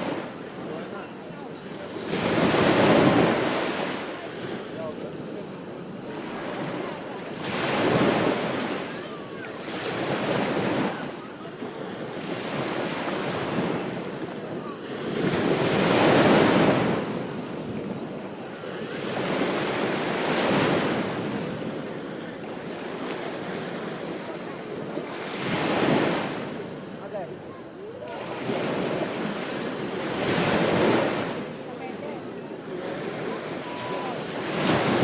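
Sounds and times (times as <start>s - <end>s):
ocean waves breaking: 0.0s - 35.0s.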